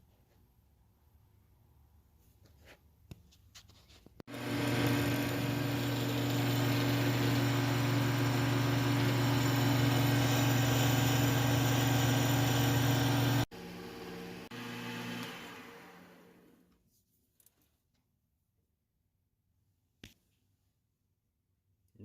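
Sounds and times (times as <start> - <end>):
power tool grinding steel: 4.3 - 16.5.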